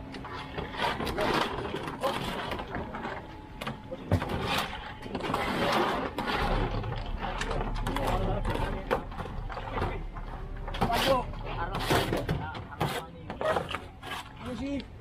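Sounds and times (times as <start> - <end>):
people talking: 7.0 - 14.9.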